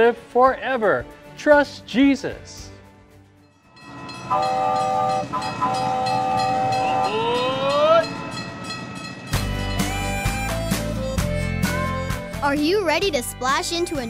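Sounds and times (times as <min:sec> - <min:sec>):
train horn blasts: 0:03.9 - 0:07.4.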